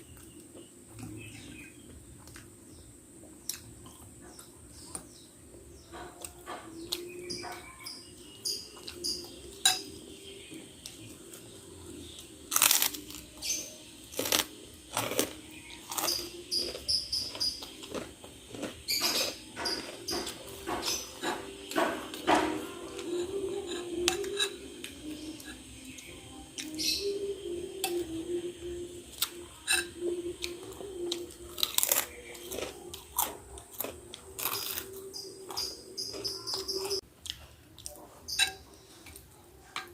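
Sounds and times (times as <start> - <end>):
faint hum: 0.0 - 39.9
chewing and biting: 12.5 - 13.3, 14.1 - 21.4, 30.4 - 38.4
mouth sounds of eating: 22.8 - 39.9
spoon clinking in a bowl: 38.3 - 38.6.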